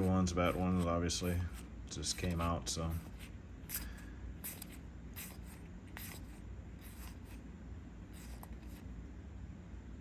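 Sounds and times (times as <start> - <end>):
cards swishing by hand: 0.0 - 7.5
low steady hum: 0.0 - 10.0.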